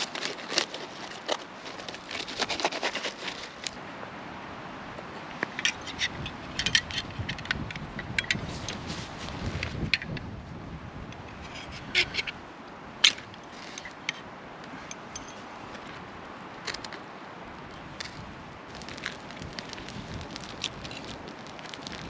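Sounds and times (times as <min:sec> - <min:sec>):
campfire crackling: 0:00.0 - 0:22.0
fire hiss: 0:18.7 - 0:22.0.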